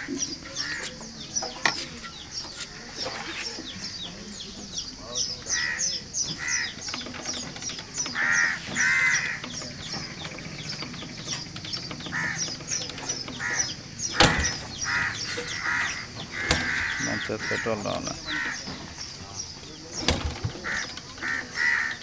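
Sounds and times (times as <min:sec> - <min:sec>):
crows cawing: 0:00.0 - 0:01.2, 0:05.4 - 0:11.0, 0:11.9 - 0:19.0, 0:20.5 - 0:22.0
small birds chirping: 0:00.0 - 0:22.0.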